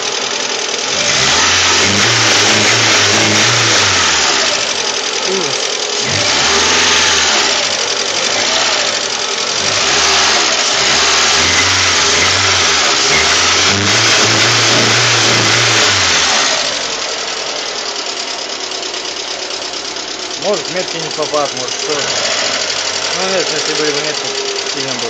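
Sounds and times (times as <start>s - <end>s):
car engine revving and idling: 0.0s - 25.0s
engine knocking: 0.0s - 25.0s.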